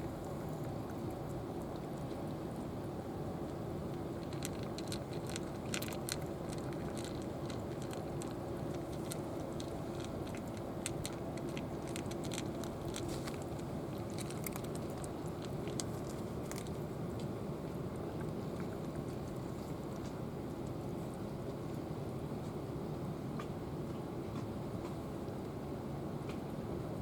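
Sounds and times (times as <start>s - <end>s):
cat crunching dry food: 3.9s - 17.0s.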